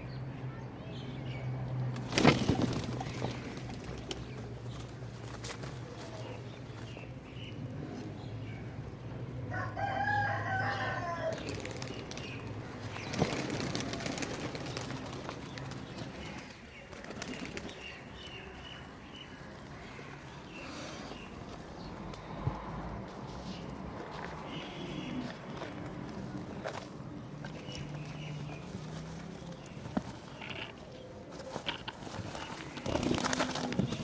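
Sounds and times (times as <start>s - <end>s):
pigeons flapping wings: 2.0s - 6.1s, 11.3s - 17.9s, 31.4s - 34.0s.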